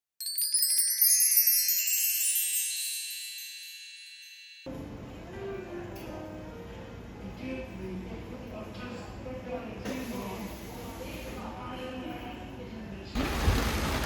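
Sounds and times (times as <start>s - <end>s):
cascade of tinkling bell notes: 0.2s - 4.7s.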